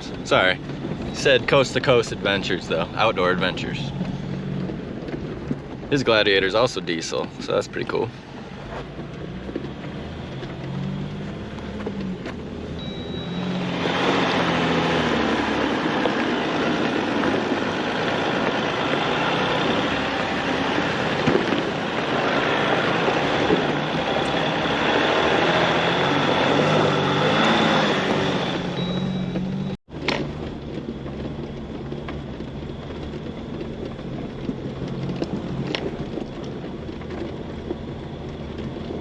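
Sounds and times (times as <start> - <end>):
rushing noise of moving vehicle: 0.0 - 39.0
vehicle engine running: 0.0 - 39.0.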